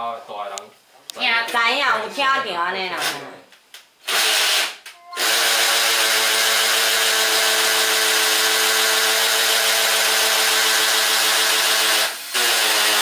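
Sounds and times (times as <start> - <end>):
electric drill whining: 4.1 - 13.0.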